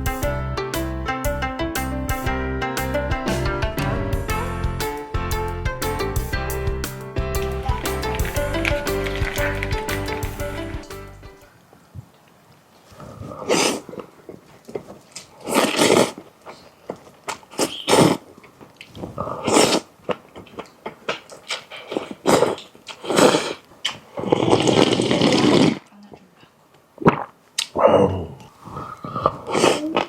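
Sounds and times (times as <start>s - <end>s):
chewing clicks: 7.4s - 10.8s
person slurping noodles: 13.3s - 14.0s, 15.4s - 16.2s, 19.2s - 19.9s, 21.5s - 23.6s, 24.2s - 25.9s, 29.2s - 30.0s.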